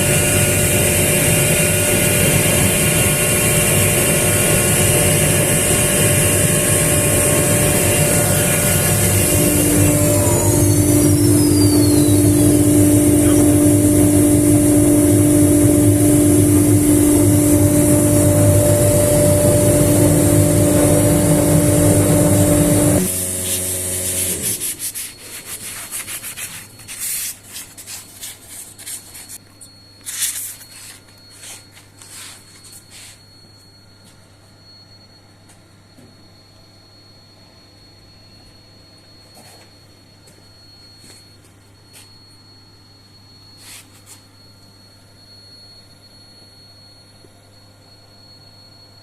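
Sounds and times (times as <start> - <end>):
router spindle cutting: 0.0 - 14.2
low hum: 0.0 - 23.2
spindle winding down: 0.0 - 24.5.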